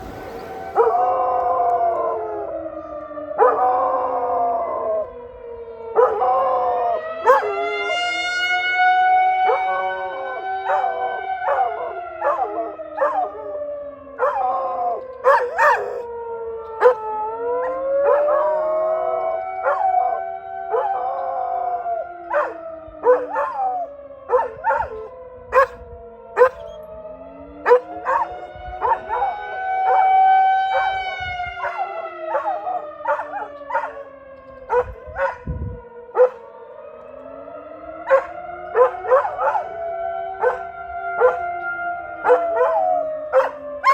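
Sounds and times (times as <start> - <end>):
warning siren wailing: 0.0 - 43.9
dog howling: 6.0 - 8.0, 9.5 - 13.6, 14.2 - 16.1, 16.8 - 25.8, 26.4 - 26.8, 27.6 - 35.5, 36.2 - 36.4, 38.1 - 41.5, 42.2 - 43.9
dog barking: 7.2 - 7.6, 10.7 - 13.2, 15.2 - 16.0, 16.8 - 17.0, 19.6 - 19.9, 22.3 - 23.6, 24.3 - 25.0, 25.6 - 25.8, 26.4 - 26.7, 27.7 - 30.1, 30.7 - 31.0, 31.6 - 34.0, 34.7 - 35.5, 36.2 - 36.4, 38.1 - 39.7, 40.4 - 41.5, 42.2 - 43.9.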